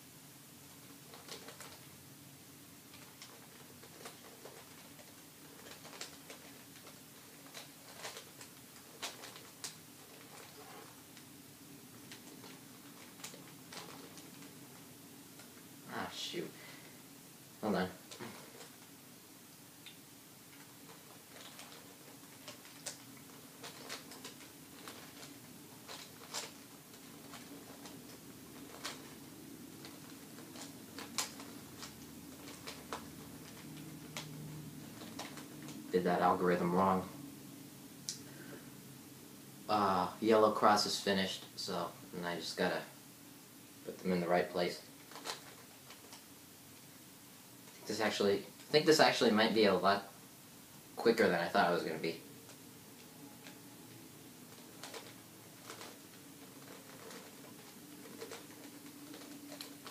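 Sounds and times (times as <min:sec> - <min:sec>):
faint steady hum: 0:00.0 - 0:59.9
puzzle cube layers clicking: 0:02.9 - 0:11.3, 0:19.8 - 0:35.8.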